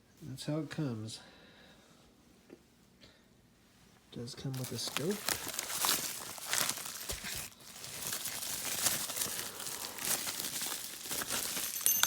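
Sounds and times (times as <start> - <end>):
packaging crinkling: 4.4 - 12.0.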